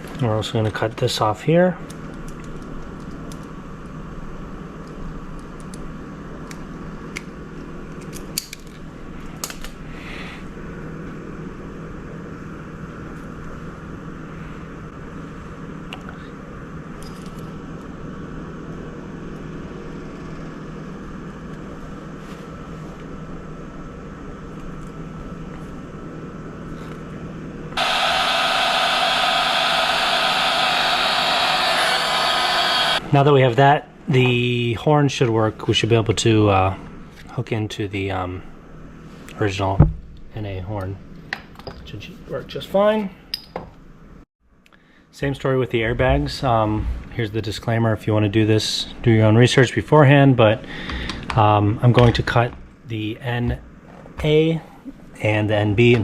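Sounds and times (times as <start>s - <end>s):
steady low hum: 0.0s - 56.0s
loud blowing noise: 27.8s - 33.2s.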